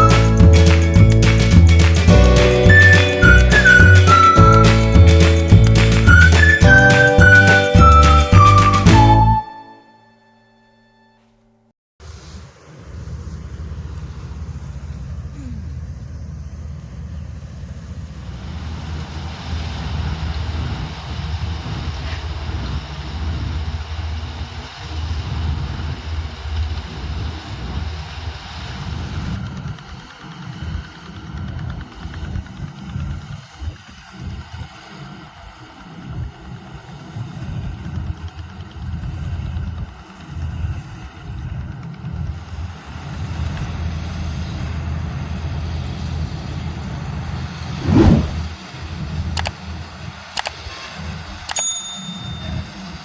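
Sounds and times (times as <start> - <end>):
combine harvester rumbling: 0.0 - 9.4
wind buffeting microphone: 28.8 - 42.5
loud whoosh: 47.8 - 48.6.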